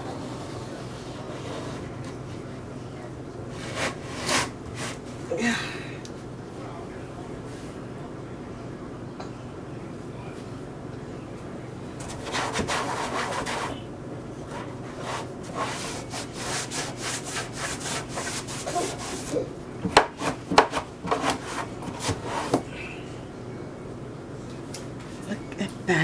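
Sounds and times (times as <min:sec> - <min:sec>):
rag scrubbing metal: 0:14.5 - 0:22.6.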